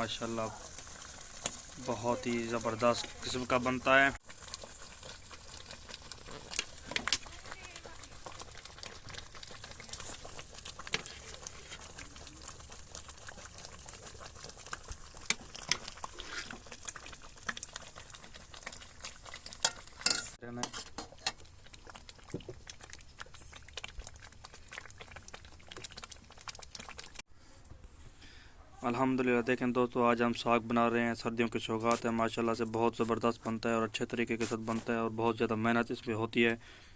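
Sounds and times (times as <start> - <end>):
food bubbling and sizzling: 0.0 - 27.3, 29.0 - 36.9
metal spoon scraping a pot: 15.3 - 16.7, 19.6 - 21.4.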